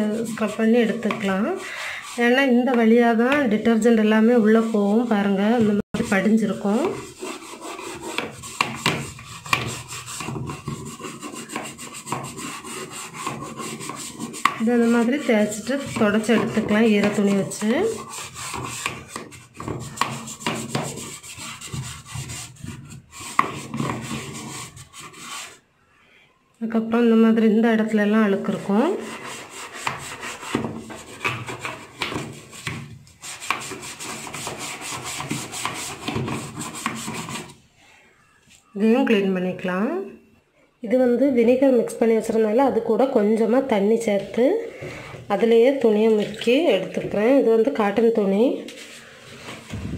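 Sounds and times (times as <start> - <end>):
brush scrubbing: 0.0 - 25.6, 28.6 - 37.6.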